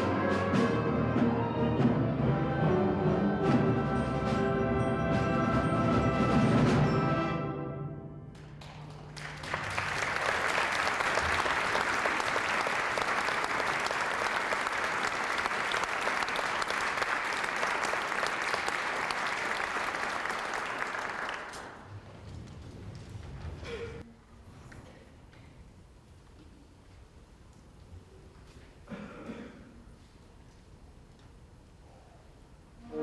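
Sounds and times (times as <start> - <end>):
audience applauding: 8.3 - 22.0.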